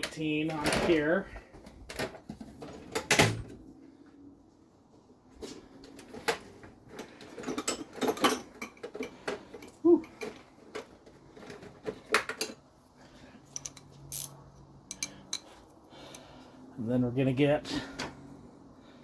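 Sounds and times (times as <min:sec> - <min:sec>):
wrench clinking on metal nuts: 0:13.5 - 0:16.2.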